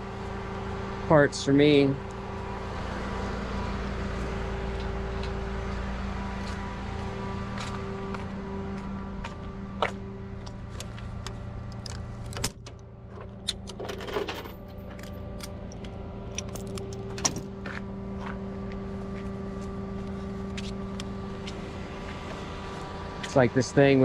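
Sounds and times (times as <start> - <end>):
tow truck engine idling: 0.0 - 24.0
metallic clinks and knocks: 13.1 - 17.5.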